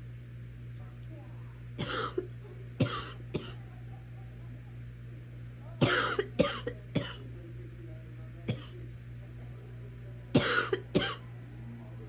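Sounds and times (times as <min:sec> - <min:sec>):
girl coughing: 0:01.8 - 0:03.6, 0:05.8 - 0:07.2, 0:10.4 - 0:11.2.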